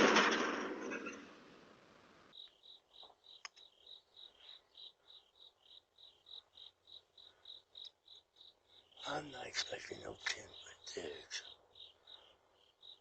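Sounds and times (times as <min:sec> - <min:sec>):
cricket chirping: 0:02.3 - 0:13.0.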